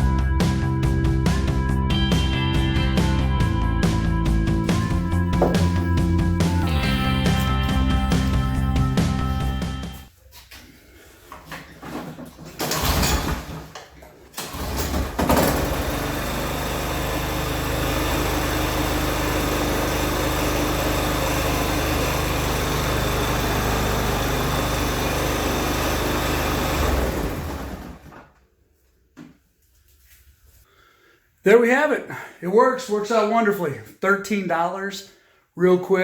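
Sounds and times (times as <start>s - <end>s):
lawn mower engine: 4.6s - 10.0s, 14.4s - 28.2s.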